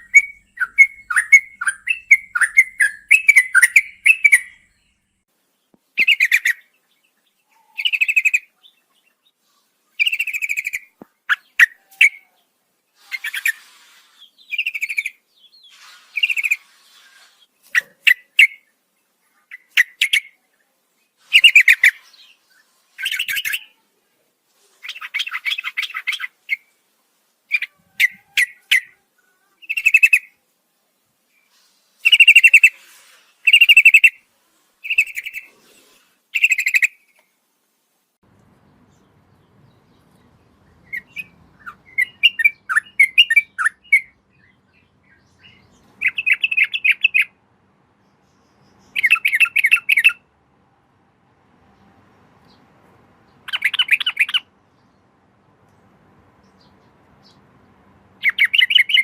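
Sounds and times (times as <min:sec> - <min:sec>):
bulbul singing: 0:00.0 - 0:05.0, 0:38.7 - 0:47.4, 0:48.1 - 0:50.2, 0:53.3 - 0:55.0, 0:58.2 - 0:59.0.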